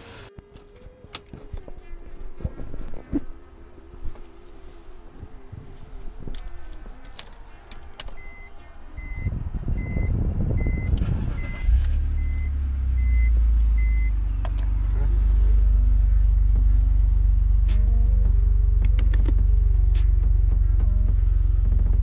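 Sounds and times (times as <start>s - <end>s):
car engine idling: 2.0s - 22.0s
warning chime beeping: 8.2s - 14.2s
starter cranking engine: 10.6s - 12.5s
clicks: 17.7s - 22.0s.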